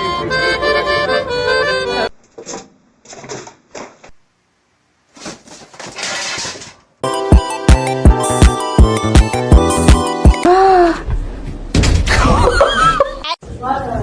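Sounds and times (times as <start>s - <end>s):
background music: 7.0s - 10.5s.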